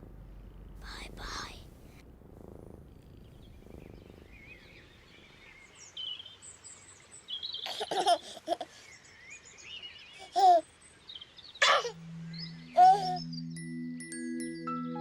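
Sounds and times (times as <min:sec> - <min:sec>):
birds warbling and chirping: 0:03.1 - 0:14.0.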